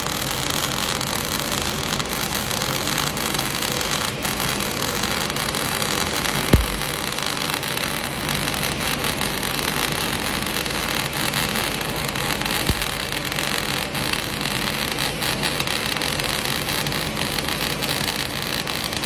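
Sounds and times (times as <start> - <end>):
welding arc crackling and hissing: 0.0 - 19.0
faint thump: 6.5 - 7.0, 12.7 - 12.9.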